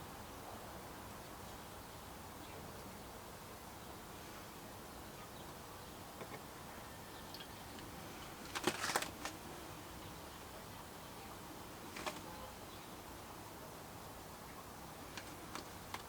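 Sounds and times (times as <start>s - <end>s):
faint room hiss: 0.0s - 16.0s
soft clicks and rustles: 7.3s - 9.5s, 11.8s - 12.4s, 15.0s - 16.0s.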